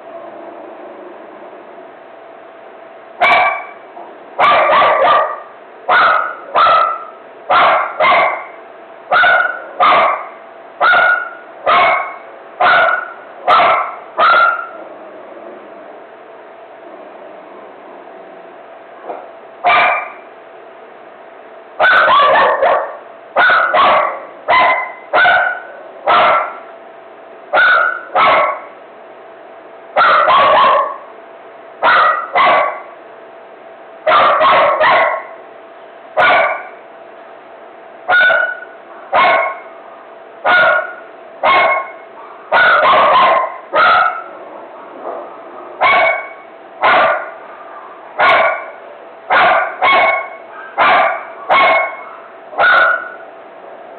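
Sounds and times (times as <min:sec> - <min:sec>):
dog barking: 0:03.2 - 0:03.8, 0:04.4 - 0:14.8, 0:19.6 - 0:20.2, 0:21.8 - 0:26.7, 0:27.5 - 0:28.8, 0:30.0 - 0:31.1, 0:31.8 - 0:33.0, 0:34.1 - 0:35.4, 0:36.2 - 0:36.8, 0:38.1 - 0:53.2.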